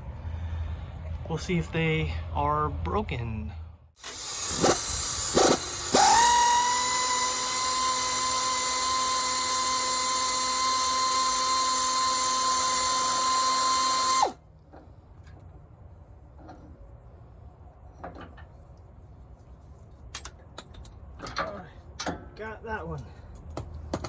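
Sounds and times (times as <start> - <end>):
power tool motor whine: 4.0 - 14.4.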